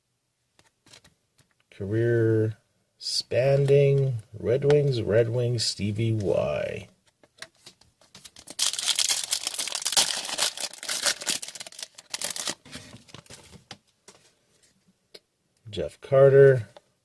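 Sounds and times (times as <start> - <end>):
foil wrapper tearing and crinkling: 8.2 - 13.4.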